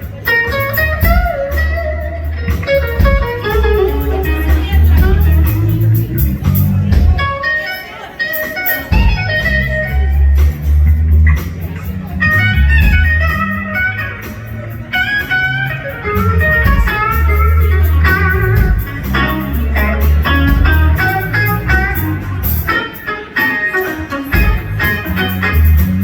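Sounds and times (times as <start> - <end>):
bass guitar: 0.0 - 26.0
lead electric guitar: 0.0 - 26.0.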